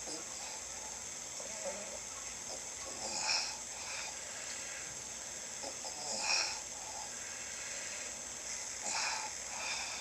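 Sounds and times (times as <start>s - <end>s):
steady hiss: 0.0s - 10.0s
person snoring: 3.0s - 4.2s, 5.6s - 7.1s
faint rasping breath: 3.0s - 10.0s.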